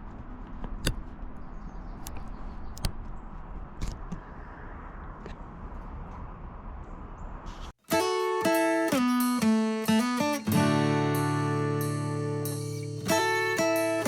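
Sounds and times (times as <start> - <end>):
outdoor background noise: 0.0 - 8.0.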